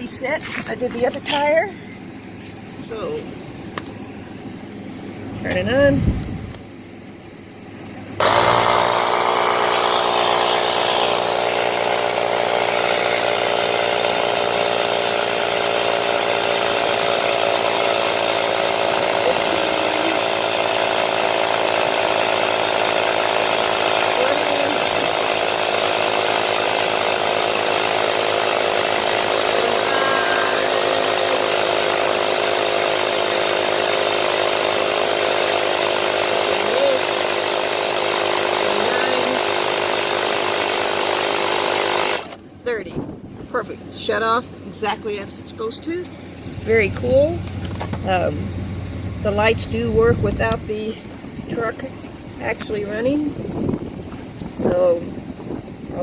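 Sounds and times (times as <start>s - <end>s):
electric air compressor running: 1.9s - 42.6s, 45.0s - 56.0s.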